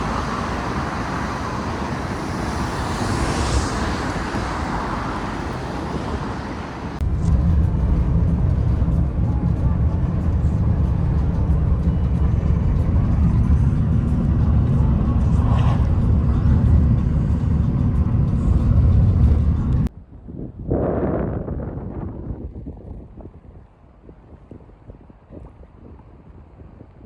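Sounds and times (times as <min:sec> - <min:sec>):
road traffic vehicles passing: 0:00.0 - 0:20.2
steady low rumble: 0:00.0 - 0:27.0.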